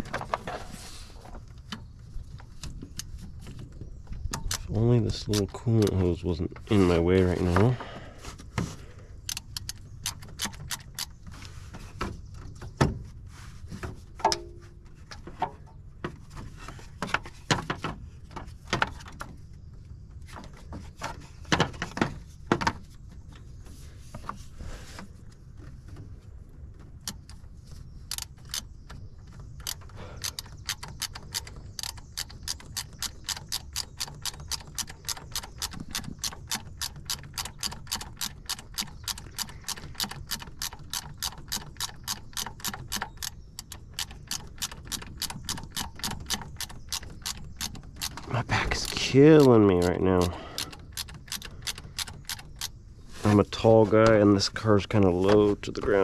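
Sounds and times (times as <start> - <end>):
ratchet wrench clicking: 4.4 - 4.7, 9.3 - 11.2, 28.1 - 28.7, 29.6 - 52.8.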